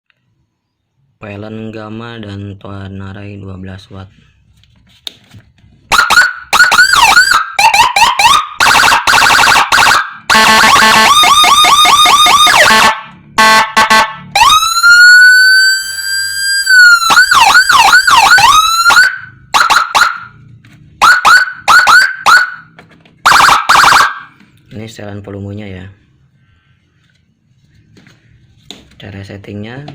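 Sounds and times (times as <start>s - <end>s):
electronic siren patterns: 5.9s - 24.4s.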